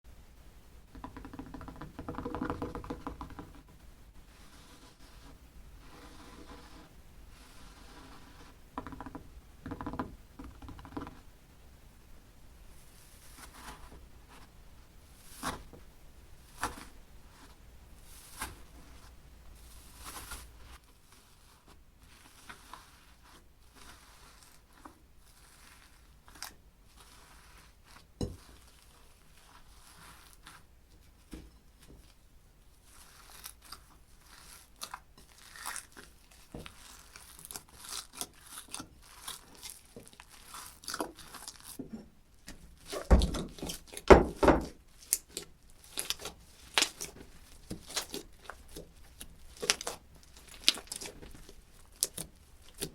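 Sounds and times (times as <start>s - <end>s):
slime clicking and crackling: 32.9s - 41.8s, 42.4s - 52.9s.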